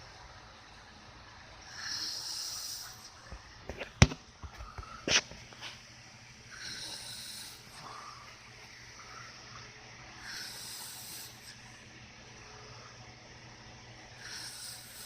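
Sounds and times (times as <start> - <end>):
person snoring: 1.7 - 3.0, 6.5 - 8.3, 10.2 - 11.6, 14.2 - 15.0.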